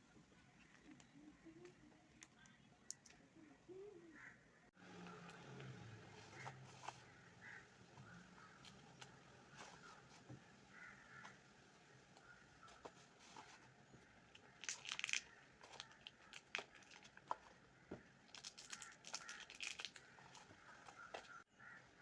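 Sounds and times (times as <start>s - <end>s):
packaging rustling: 14.3s - 17.6s.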